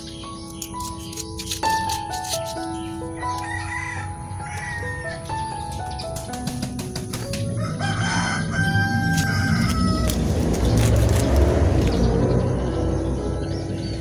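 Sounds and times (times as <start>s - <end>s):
background music: 0.0s - 14.0s
rooster crowing: 3.2s - 5.1s, 7.6s - 10.5s.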